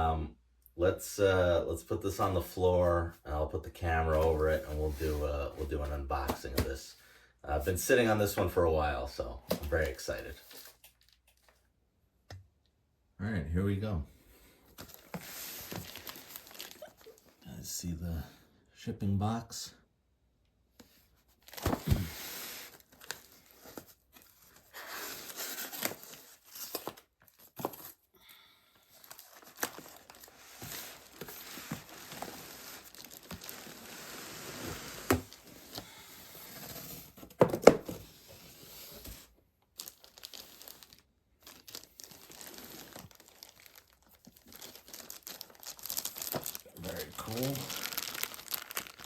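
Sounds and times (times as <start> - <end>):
packing material rustling: 14.8 - 17.2, 29.0 - 36.9, 38.8 - 49.0.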